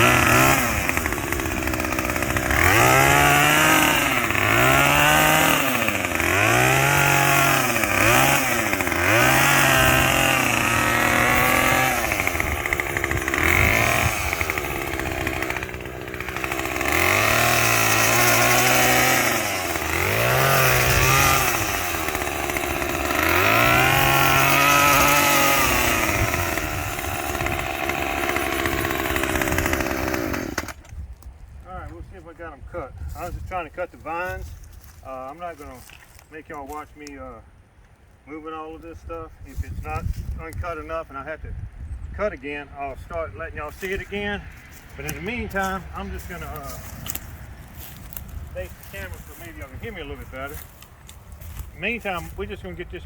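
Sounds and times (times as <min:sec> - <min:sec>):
chainsaw engine revving: 0:00.0 - 0:30.8, 0:43.7 - 0:52.6.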